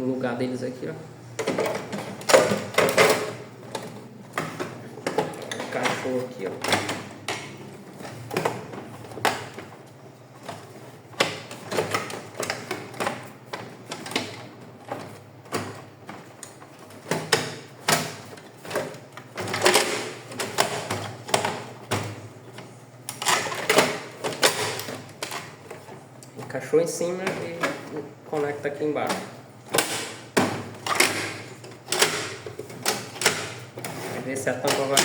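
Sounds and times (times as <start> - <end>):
printer parts clicking and knocking: 1.4 - 35.0.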